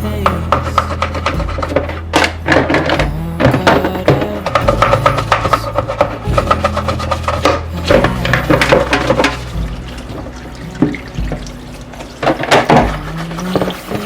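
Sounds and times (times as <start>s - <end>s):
soft background music: 0.0s - 14.0s
tap water running and splashing: 3.7s - 14.0s.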